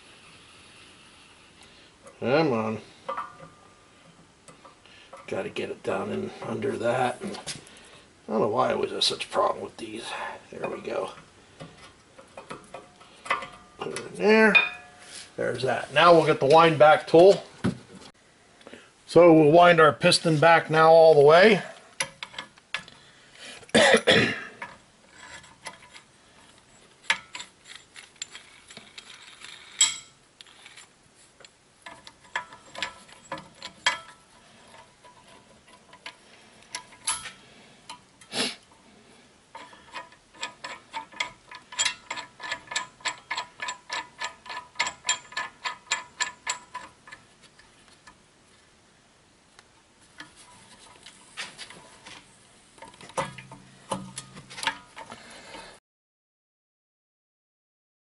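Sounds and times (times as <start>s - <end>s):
metal clatter: 31.8s - 38.0s, 39.5s - 47.3s.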